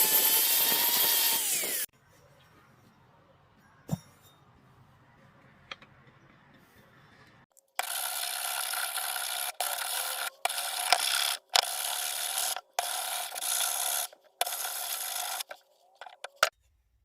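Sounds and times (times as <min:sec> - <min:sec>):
tool grinding axe: 0:00.0 - 0:01.9, 0:07.8 - 0:16.5.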